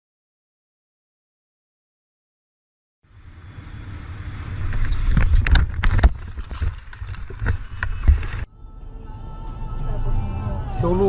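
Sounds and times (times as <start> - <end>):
low road rumble: 3.0 - 11.0
wind noise: 3.3 - 8.5.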